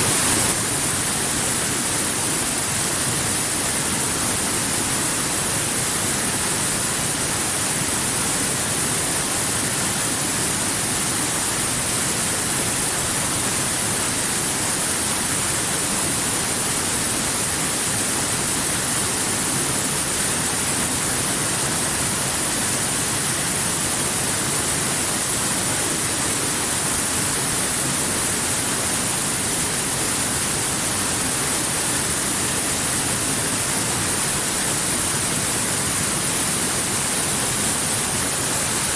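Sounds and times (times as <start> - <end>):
waterfall rushing: 0.0 - 2.6.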